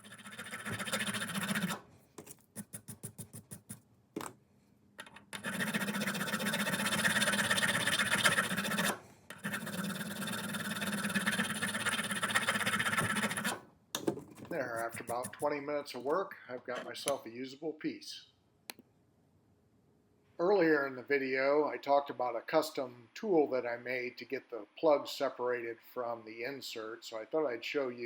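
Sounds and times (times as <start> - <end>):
file rasping on metal threads: 0.0 - 1.8, 2.5 - 3.8, 5.4 - 13.6, 14.7 - 15.5.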